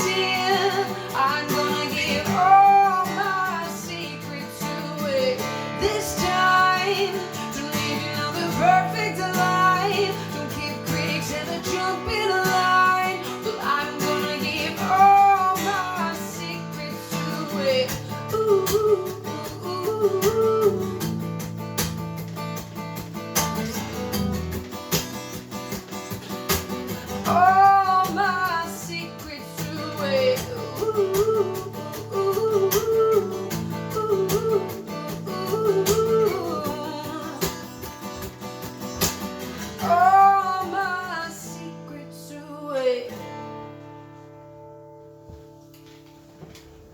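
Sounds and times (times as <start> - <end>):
person singing wordless ooh: 0.0 - 21.0, 27.2 - 37.6
acoustic guitar playing: 0.0 - 46.9.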